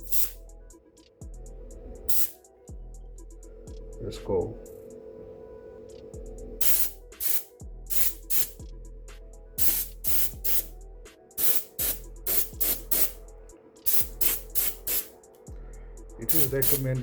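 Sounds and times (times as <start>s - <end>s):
airbrush spraying hiss: 0.0s - 0.4s, 2.1s - 2.4s, 6.6s - 8.6s, 9.6s - 10.8s, 11.4s - 13.2s, 13.8s - 15.2s, 16.2s - 17.0s
steady low hum: 0.0s - 17.0s.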